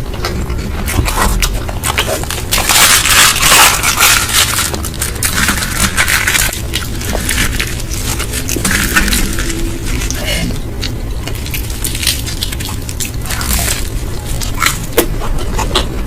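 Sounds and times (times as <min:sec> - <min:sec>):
chewing and crunching food: 0:00.0 - 0:16.0.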